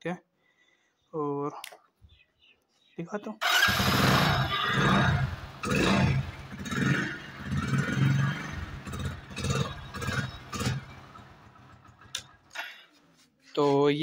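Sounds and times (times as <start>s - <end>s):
motorcycle engine revving: 3.4s - 12.5s.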